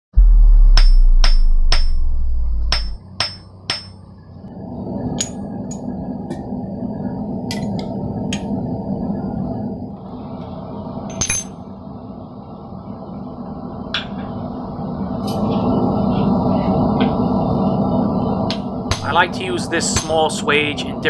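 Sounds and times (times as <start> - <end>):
loud low rumble: 0.1 - 21.0
steady rushing noise: 0.2 - 21.0
hammer ringing on anvil: 2.7 - 4.0.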